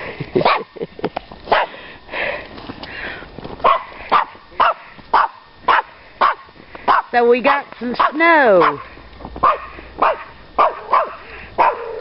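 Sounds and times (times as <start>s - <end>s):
dog barking: 0.4s - 0.7s, 1.5s - 1.8s, 3.6s - 7.2s, 8.0s - 12.0s.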